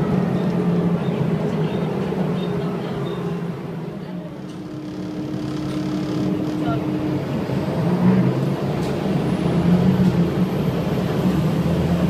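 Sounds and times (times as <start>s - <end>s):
bus diesel engine droning: 0.0s - 12.0s
faint high squeaks: 4.6s - 6.8s.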